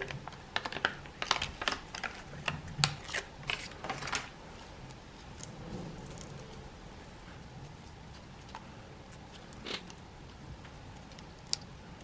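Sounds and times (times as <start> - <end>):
plastic packaging clicks and rustles: 0.0 - 4.4.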